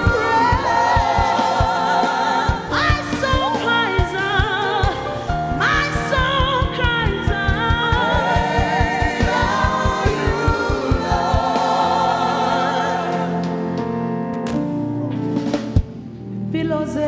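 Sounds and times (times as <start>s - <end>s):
fast bass drum pulse: 0.0s - 11.9s
gospel choir singing with band: 0.0s - 14.1s.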